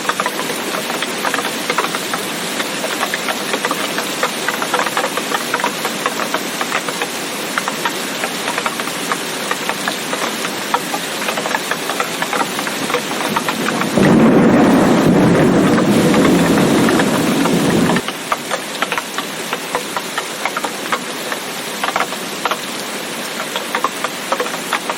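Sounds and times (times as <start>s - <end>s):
steady rain: 0.0s - 24.9s
low thunder rumble: 12.8s - 18.0s.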